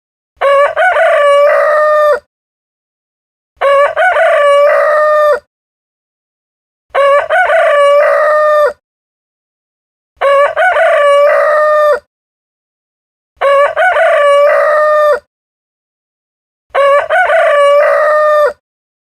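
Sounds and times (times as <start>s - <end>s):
rooster crowing: 0.4s - 2.3s, 3.6s - 5.5s, 6.9s - 8.8s, 10.2s - 12.1s, 13.4s - 15.3s, 16.7s - 18.6s.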